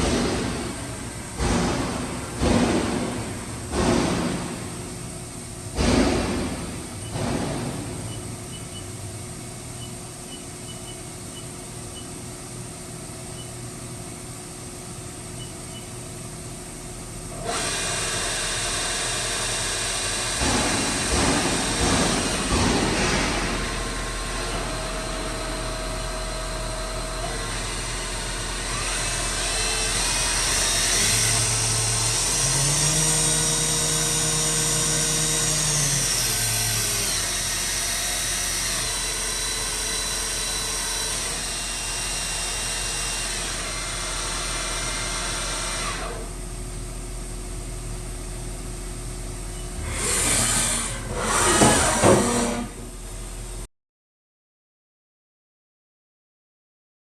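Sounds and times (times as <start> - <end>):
loud noisy bursts: 0.0 - 8.4, 49.8 - 53.0
machine hum and whine: 0.0 - 53.7.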